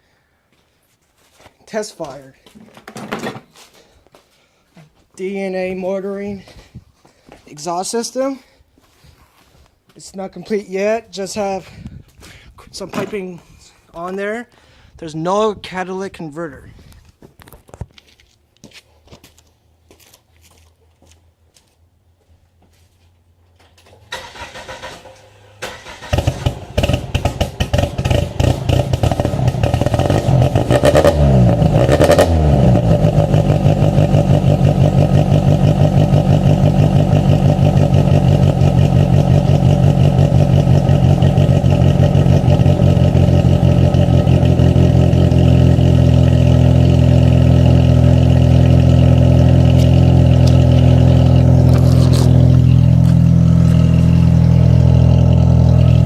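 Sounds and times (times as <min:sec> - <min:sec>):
car engine cranking and catching: 0:23.6 - 0:56.0
car engine idling: 0:24.2 - 0:56.0
car engine revving: 0:24.2 - 0:56.0.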